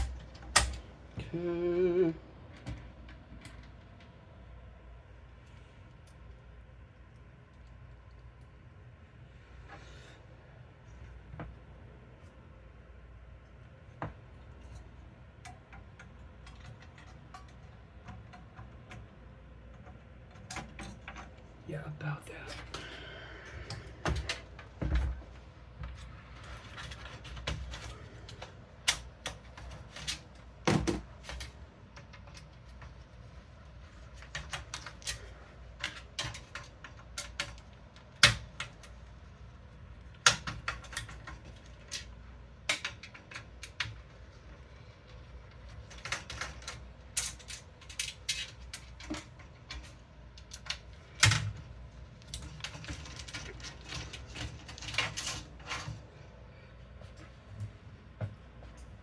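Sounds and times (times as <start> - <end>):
computer parts clicking and tapping: 0.0 - 0.8, 40.0 - 55.4.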